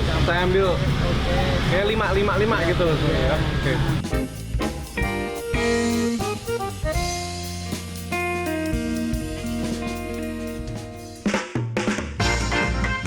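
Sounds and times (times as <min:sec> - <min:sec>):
jazzy background music: 0:04.0 - 0:11.4, 0:12.2 - 0:13.0.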